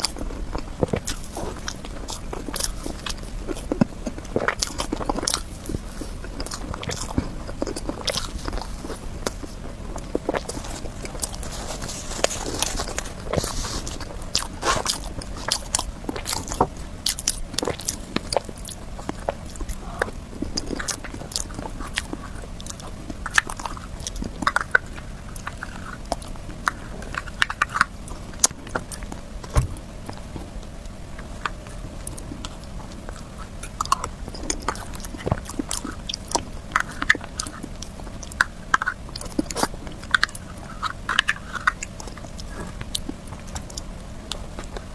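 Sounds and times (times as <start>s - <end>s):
chewing with wet mouth clicks: 0.0s - 44.9s.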